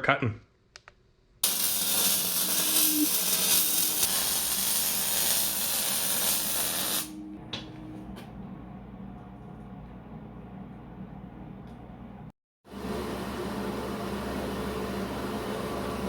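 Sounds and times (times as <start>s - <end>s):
loud steady hiss: 1.4s - 7.1s.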